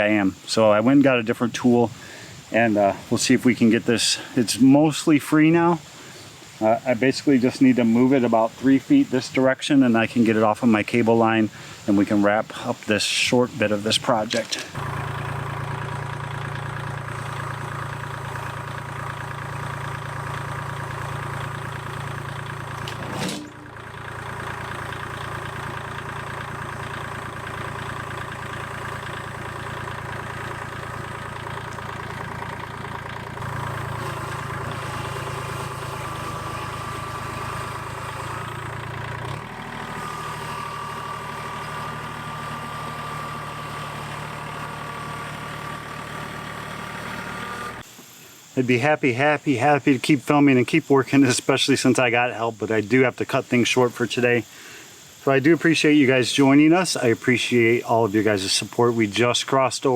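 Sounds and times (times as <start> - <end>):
engine idling: 11.0 - 49.9.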